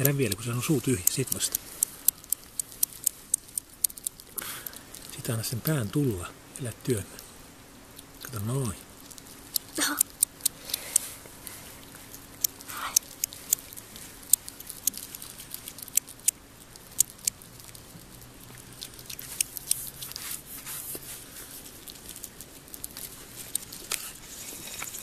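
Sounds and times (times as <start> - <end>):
hedgehog chewing and crunching: 0.0 - 25.0.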